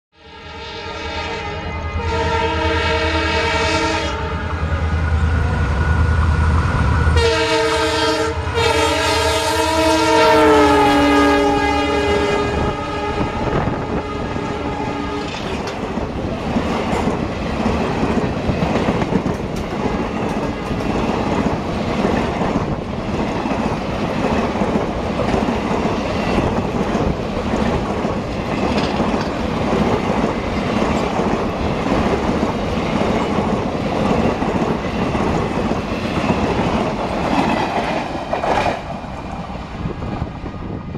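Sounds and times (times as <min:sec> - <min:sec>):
locomotive multi-tone horn: 0:00.2 - 0:05.6, 0:07.1 - 0:15.6
train wheels clacking over rail joints: 0:15.2 - 0:39.0.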